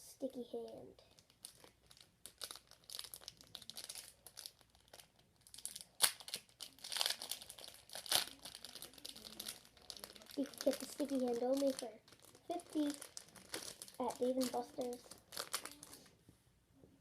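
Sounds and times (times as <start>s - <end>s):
plastic packaging crinkling: 1.0s - 16.2s.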